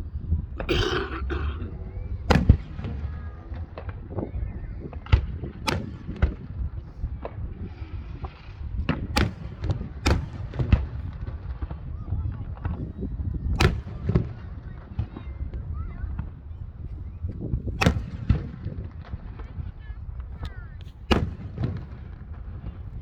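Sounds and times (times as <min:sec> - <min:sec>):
small fireworks pops: 0:02.2 - 0:23.0.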